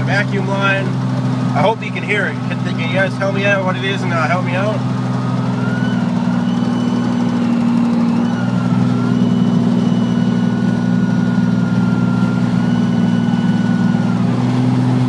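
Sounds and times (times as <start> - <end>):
car engine running: 0.0 - 15.0
thin whistle: 5.2 - 14.2.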